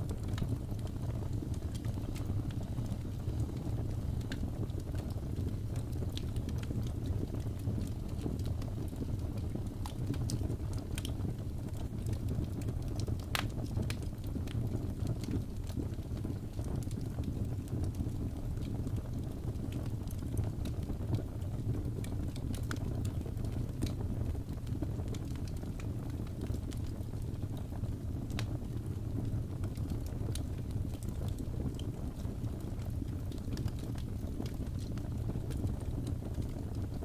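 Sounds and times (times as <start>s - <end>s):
fire crackling and popping: 0.0s - 37.0s
low rumble of burning logs: 0.0s - 37.0s.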